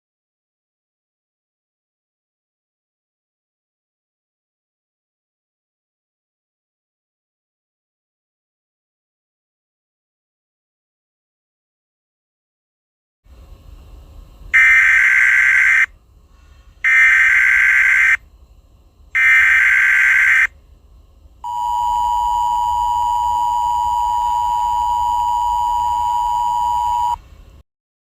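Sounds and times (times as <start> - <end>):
digital data tone bursts: 14.6 - 15.9, 16.8 - 18.2, 19.2 - 20.5, 21.5 - 27.2
two-tone attention signal: 21.5 - 27.2.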